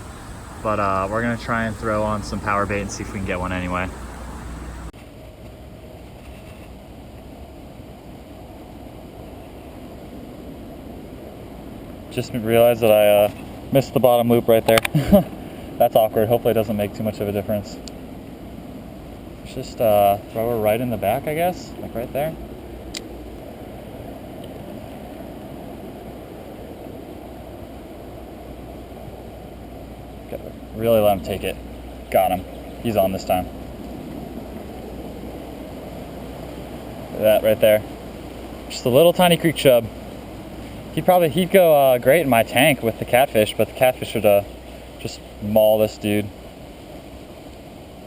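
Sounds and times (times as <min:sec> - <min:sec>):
water rushing: 0:00.0 - 0:04.9, 0:27.8 - 0:48.0.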